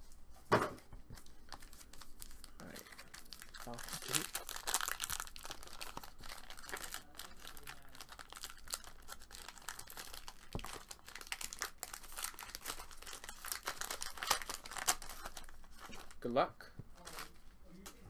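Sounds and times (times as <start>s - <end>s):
plastic packaging crinkling and tearing: 1.1s - 16.3s, 17.0s - 17.5s.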